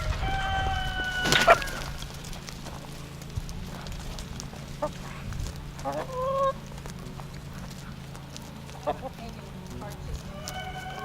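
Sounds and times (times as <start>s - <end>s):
chicken call: 0.0s - 2.0s, 5.8s - 6.6s, 10.3s - 11.0s
steady low hum: 0.0s - 11.0s.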